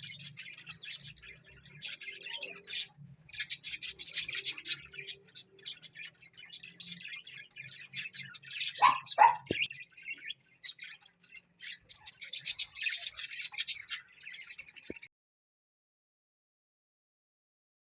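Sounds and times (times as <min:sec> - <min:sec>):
parrot chirping and chattering: 0:00.0 - 0:14.4
parrot squawks: 0:08.7 - 0:09.7.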